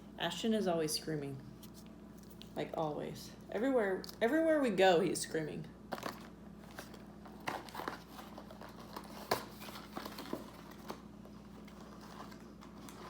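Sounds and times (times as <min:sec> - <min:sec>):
paper packaging crinkling: 0:05.9 - 0:13.0.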